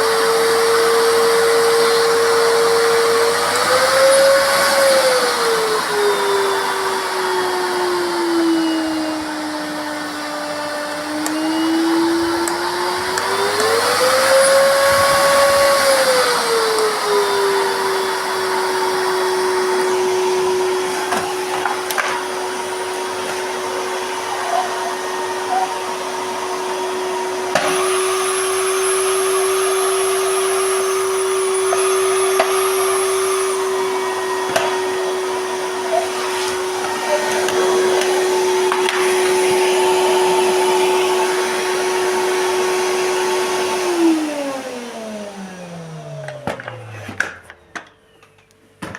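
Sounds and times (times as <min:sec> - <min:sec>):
vacuum cleaner motor hum: 0:00.0 - 0:47.9.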